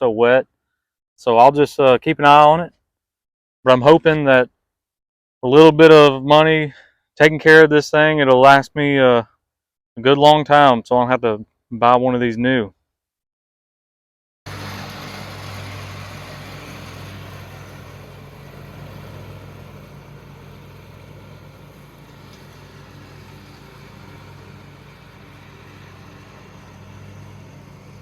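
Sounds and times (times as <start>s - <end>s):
lawnmower engine running: 14.5s - 28.0s.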